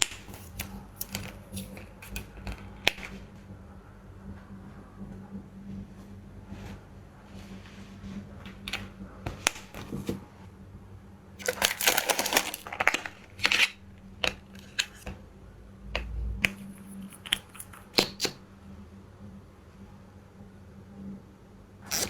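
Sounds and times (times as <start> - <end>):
packaging clicks and taps: 0.0 - 3.2, 11.4 - 15.1, 16.0 - 18.4
steady low hum: 0.0 - 21.9
packaging crinkling: 11.4 - 13.8.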